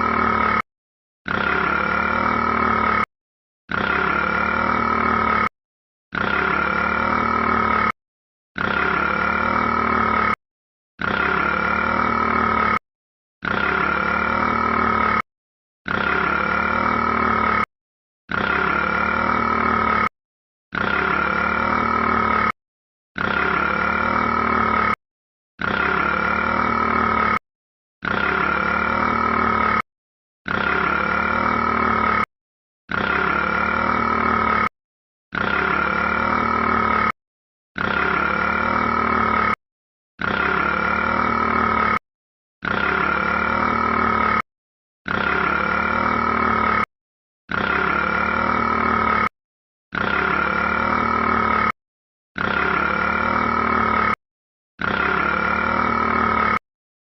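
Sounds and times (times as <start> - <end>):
burp-like rat call: 0.0 - 3.1, 3.7 - 5.5, 6.1 - 8.0, 8.6 - 10.4, 11.0 - 12.8, 13.4 - 17.7, 18.3 - 22.6, 23.2 - 25.0, 25.6 - 27.4, 28.0 - 32.3, 32.9 - 37.2, 37.8 - 39.6, 40.2 - 42.0, 42.6 - 46.9, 47.5 - 51.8, 52.4 - 54.2, 54.8 - 56.6.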